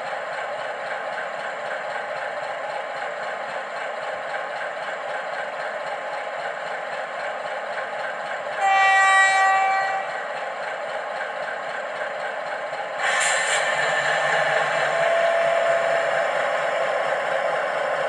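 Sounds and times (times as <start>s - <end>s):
model train running: 0.0s - 18.0s
train horn blast: 8.6s - 10.2s, 14.8s - 16.0s.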